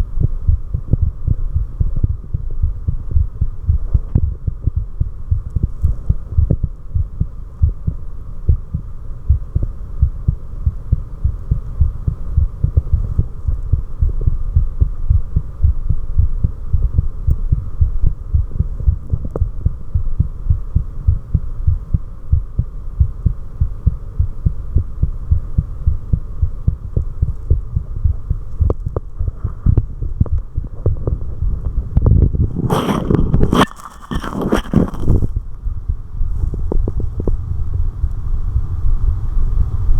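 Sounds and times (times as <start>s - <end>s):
heartbeat thumps: 0.0s - 37.9s
faint steady hum: 0.0s - 39.9s.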